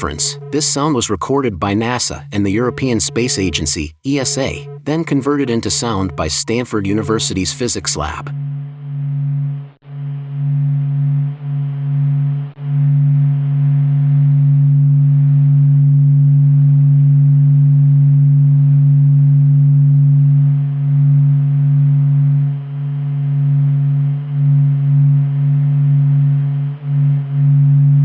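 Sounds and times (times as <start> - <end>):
faint overtone: 0.0 - 14.9
deep low steady hum: 0.0 - 28.0.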